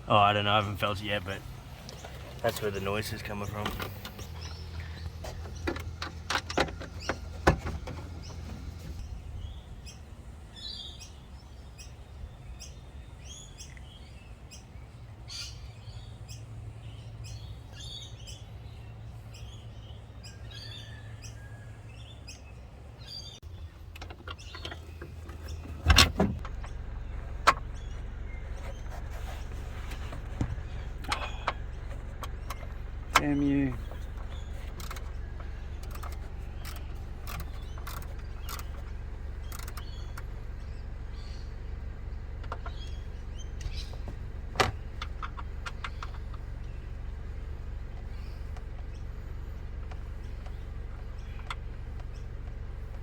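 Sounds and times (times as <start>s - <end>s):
low steady hum: 0.0s - 20.3s, 23.4s - 53.0s
birds chirping: 0.0s - 53.0s
tools clicking and knocking: 3.6s - 9.0s, 29.9s - 38.9s.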